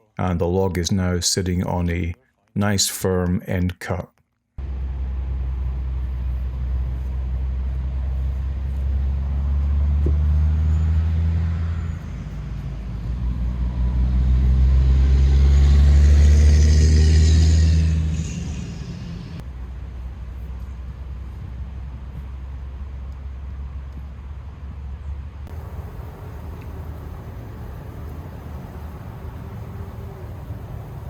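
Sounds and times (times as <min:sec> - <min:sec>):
vehicle engine hum: 0:04.6 - 0:21.8, 0:25.5 - 0:31.0
rushing hiss: 0:25.5 - 0:31.0.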